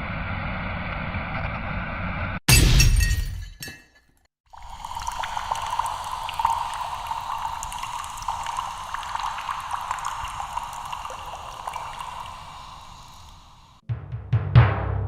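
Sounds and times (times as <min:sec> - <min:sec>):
fizzing hiss with crackles: 0:04.5 - 0:13.8.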